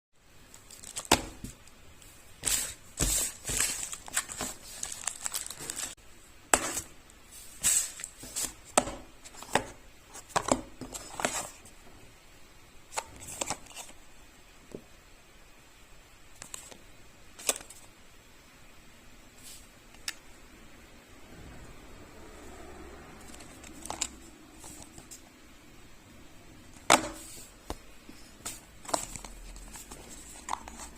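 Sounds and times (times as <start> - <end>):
packaging crinkling and rustling: 0.4 - 1.7, 2.4 - 6.0, 28.4 - 30.9.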